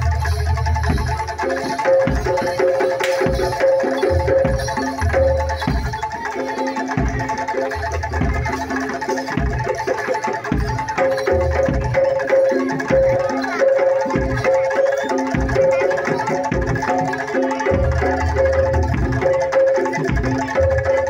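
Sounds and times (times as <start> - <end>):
low drum beats: 0.0 - 6.3
tuned metal percussion: 0.0 - 21.0.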